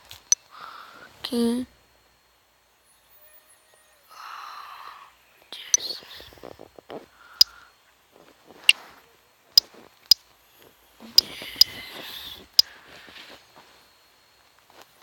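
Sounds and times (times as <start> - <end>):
faint whispering: 3.9 - 7.8, 11.0 - 13.1.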